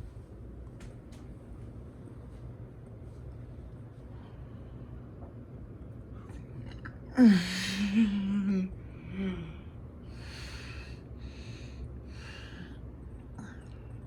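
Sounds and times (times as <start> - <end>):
heavy breaths: 8.8 - 14.0.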